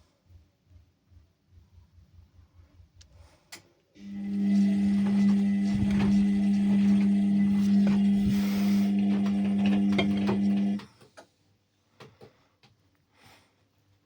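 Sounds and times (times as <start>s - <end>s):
washing machine humming: 4.0s - 11.2s.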